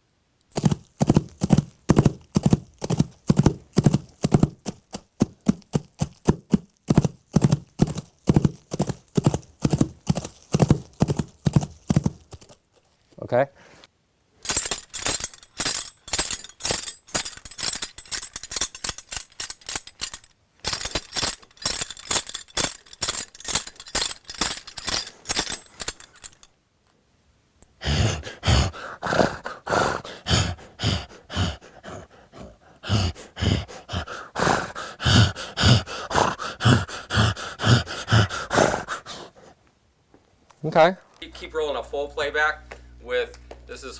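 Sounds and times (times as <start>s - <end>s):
hooves and bridle tack clattering: 0.5s - 13.2s, 14.4s - 26.6s, 27.8s - 39.6s
horse snorts and grunting breaths: 0.6s - 12.6s, 27.8s - 39.6s.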